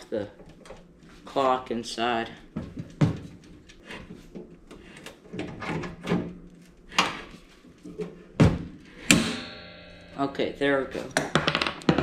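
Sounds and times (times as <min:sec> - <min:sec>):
sheet metal knocking and clanking: 0:08.4 - 0:12.0
sharp ringing metal strike: 0:09.0 - 0:11.4.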